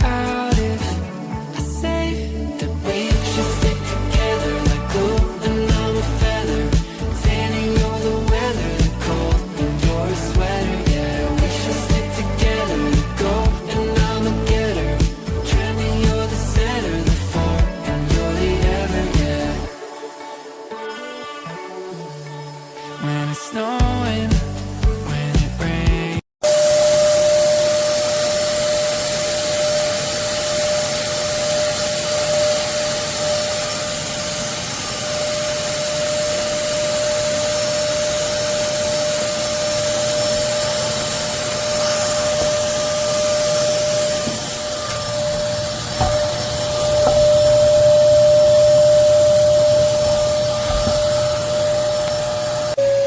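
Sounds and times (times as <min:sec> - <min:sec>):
music: 0:00.0 - 0:53.0
vacuum cleaner motor whine: 0:26.4 - 0:53.0.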